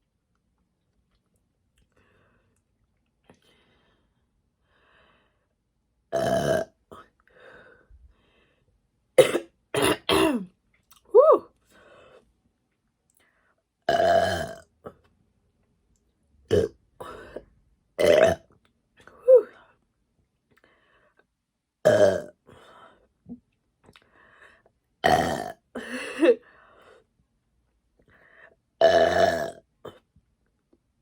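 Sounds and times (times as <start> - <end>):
woman burping: 6.1 - 7.0, 9.2 - 10.5, 13.9 - 14.6, 18.0 - 18.5, 21.8 - 22.3, 25.0 - 26.4, 28.8 - 30.0.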